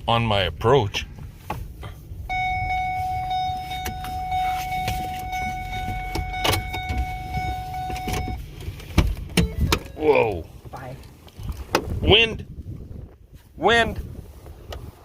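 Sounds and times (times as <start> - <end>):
low rumble: 0.0 - 15.0
vehicle electronic warning tone: 2.2 - 8.5
sharp clicks and knocks: 5.9 - 10.0.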